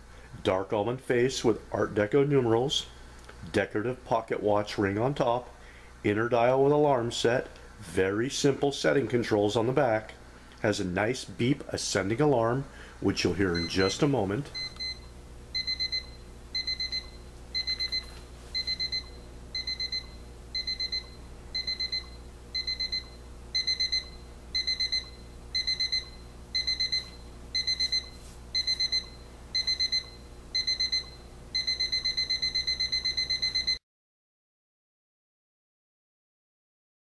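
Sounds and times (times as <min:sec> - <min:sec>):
alarm clock beeping: 0:13.5 - 0:15.0, 0:15.6 - 0:33.8.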